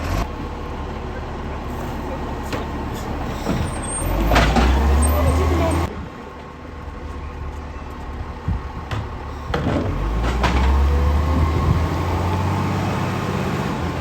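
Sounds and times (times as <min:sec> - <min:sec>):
garbage truck engine rumble: 0:00.0 - 0:14.0
sharp clunks and knocks: 0:03.3 - 0:04.9.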